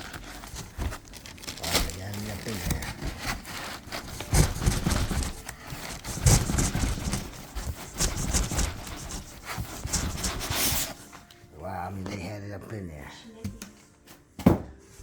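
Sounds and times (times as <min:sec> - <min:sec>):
knocks and scraping in cardboard box: 0:00.0 - 0:11.1.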